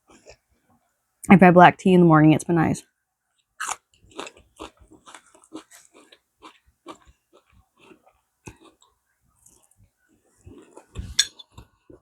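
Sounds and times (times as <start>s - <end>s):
person chewing crunchy food: 0.0s - 0.4s, 3.4s - 12.0s.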